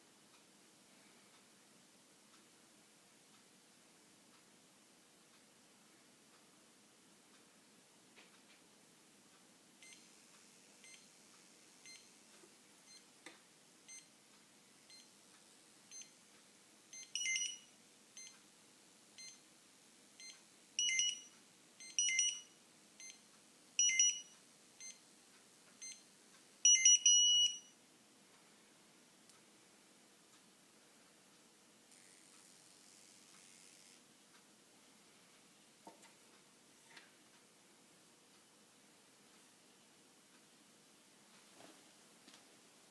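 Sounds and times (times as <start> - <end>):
barcode scanner electrical buzz: 31.9 - 34.0.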